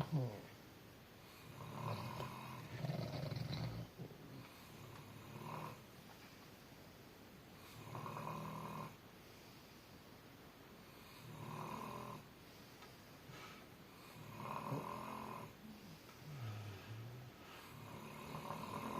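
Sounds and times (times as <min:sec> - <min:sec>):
person snoring: 0:01.4 - 0:03.9, 0:04.8 - 0:05.8, 0:07.7 - 0:09.0, 0:11.1 - 0:12.3, 0:14.0 - 0:15.6, 0:16.2 - 0:18.9.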